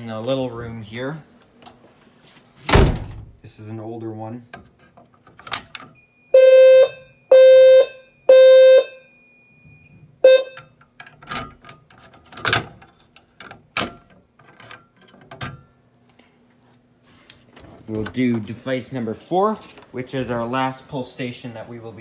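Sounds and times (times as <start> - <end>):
fire alarm horn blasts: 6.3 - 9.4, 10.2 - 10.7.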